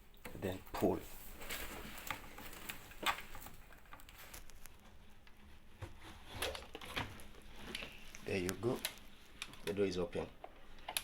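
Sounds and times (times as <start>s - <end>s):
small clicks and taps: 10.4s - 11.0s.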